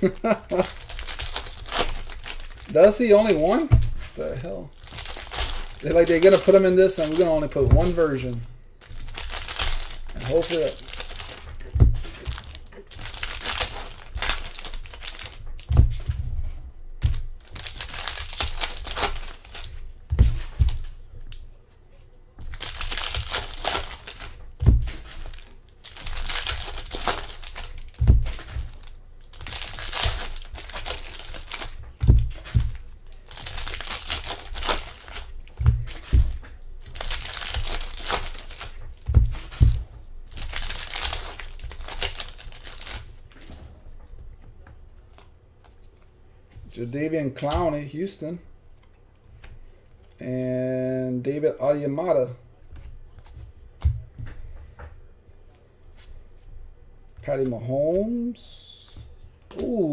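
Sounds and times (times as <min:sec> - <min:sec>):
card pack wrappers tearing and crinkling: 0:00.0 - 0:15.9, 0:17.0 - 0:21.4, 0:22.4 - 0:43.5.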